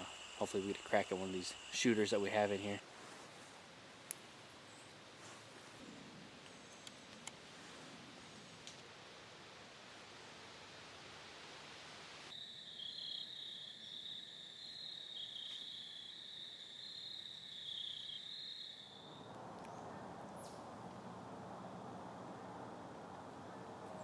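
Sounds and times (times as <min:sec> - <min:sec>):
insects trilling: 0:00.0 - 0:02.8, 0:12.3 - 0:19.8
faint hiss: 0:00.0 - 0:12.4.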